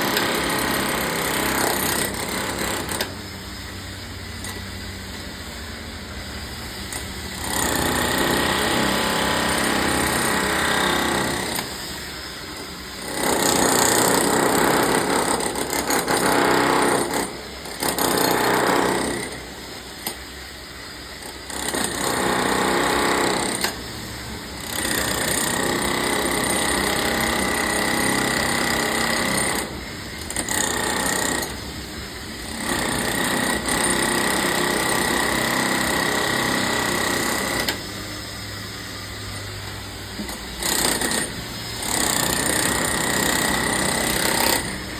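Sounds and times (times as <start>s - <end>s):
hammer drill boring into concrete: 0.0s - 3.2s, 6.9s - 23.8s, 24.5s - 31.7s, 32.4s - 44.9s.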